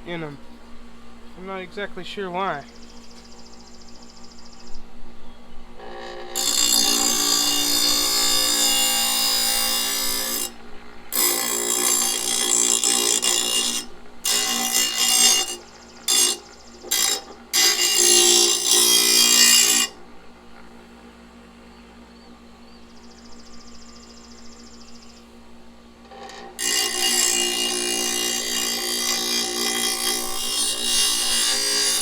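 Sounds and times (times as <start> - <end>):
grinder wheel grinding steel: 5.8 - 20.9, 26.0 - 32.0
grinder motor humming: 5.8 - 21.4.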